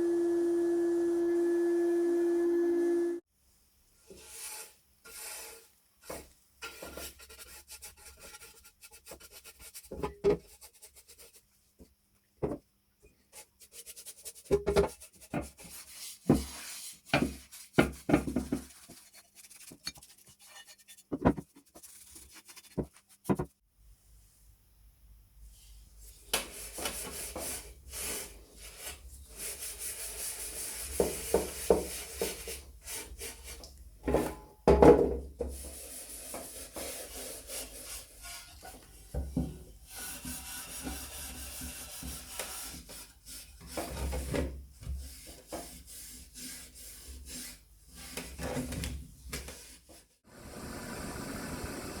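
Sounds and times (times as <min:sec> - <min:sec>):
hand rubbing on a workpiece: 0:13.7 - 0:23.6.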